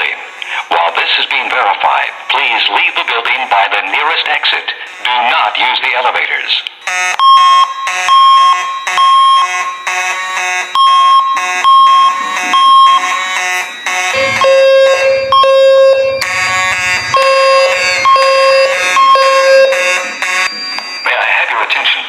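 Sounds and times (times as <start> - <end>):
spoken evacuation messages: 0.0 - 6.8, 21.0 - 22.0
electronic fire alarm tone: 6.8 - 21.6
low buzzing horn tone: 9.5 - 10.8, 11.4 - 20.6.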